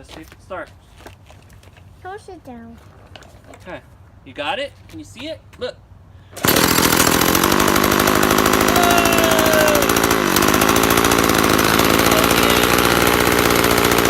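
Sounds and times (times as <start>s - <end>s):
small engine starting and running: 6.3s - 14.0s.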